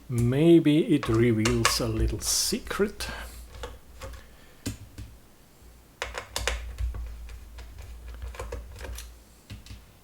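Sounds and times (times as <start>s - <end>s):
small parts being handled: 6.0s - 9.8s.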